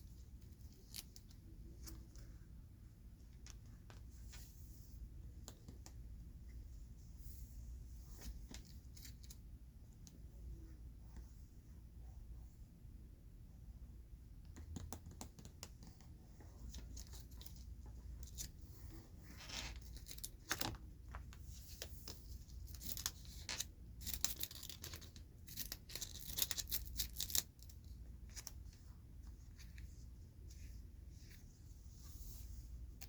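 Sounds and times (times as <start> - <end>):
cards rustling and crackling: 14.7 - 18.7, 19.3 - 31.5.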